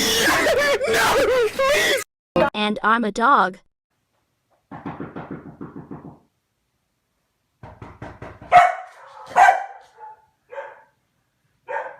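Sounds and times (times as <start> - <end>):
dog barking: 8.5 - 11.0, 11.6 - 11.9.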